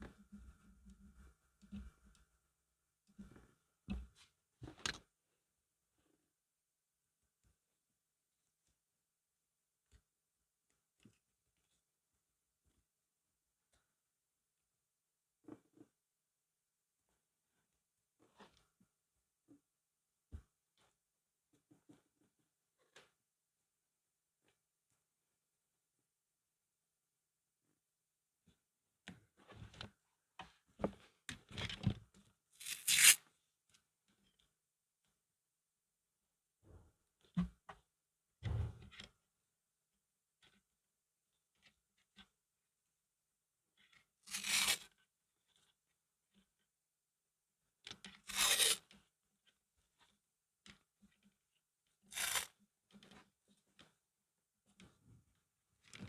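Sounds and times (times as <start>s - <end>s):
short tearing rasping noises: 32.6s - 33.2s, 44.3s - 44.9s, 48.3s - 48.8s, 52.1s - 52.6s.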